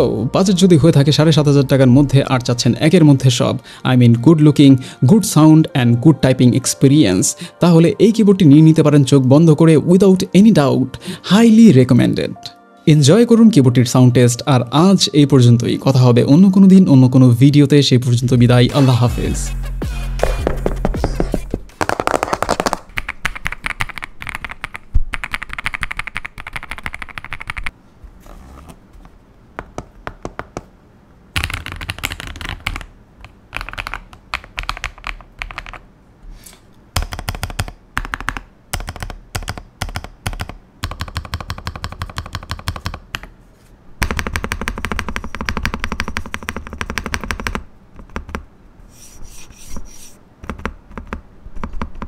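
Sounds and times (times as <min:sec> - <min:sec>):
mechanical keyboard typing: 0:21.8 - 0:27.7, 0:31.4 - 0:35.8, 0:37.0 - 0:43.3, 0:44.0 - 0:48.4, 0:50.4 - 0:52.0.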